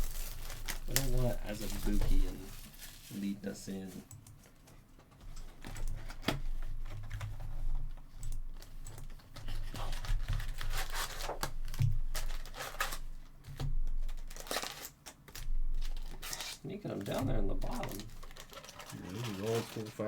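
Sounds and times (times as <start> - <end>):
packaging crinkling and tearing: 0.0 - 3.9, 8.5 - 20.0
foil packs rustling and clicking: 0.0 - 20.0.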